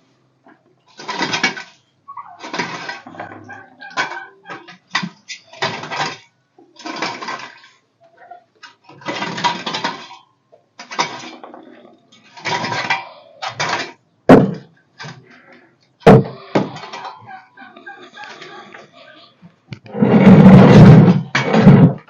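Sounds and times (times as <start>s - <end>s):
scraping clattering strokes: 8.7s - 14.0s, 19.8s - 22.0s.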